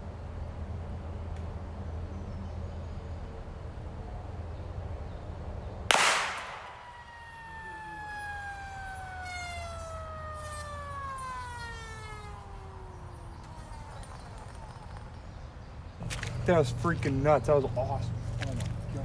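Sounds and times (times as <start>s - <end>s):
rifle shot: 5.9s - 7.4s
gas cartridge venting whistle: 5.9s - 13.8s.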